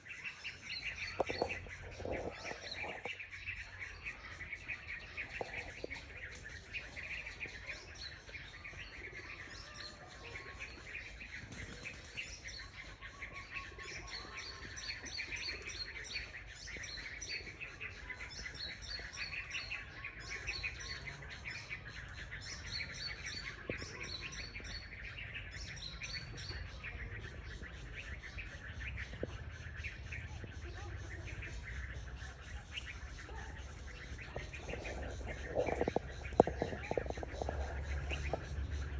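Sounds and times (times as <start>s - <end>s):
small birds chirping: 0.0s - 38.9s
steady low rumble: 33.5s - 38.9s.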